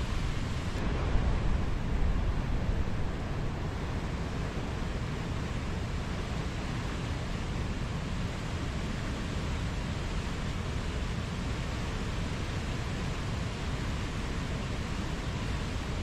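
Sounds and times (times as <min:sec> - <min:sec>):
water noise: 0:00.0 - 0:08.8
wind: 0:00.0 - 0:16.0.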